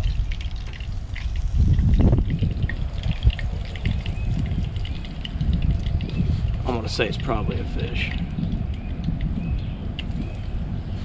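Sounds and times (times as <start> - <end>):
low rumble: 0.0 - 7.2
fish frying in oil: 0.0 - 10.4.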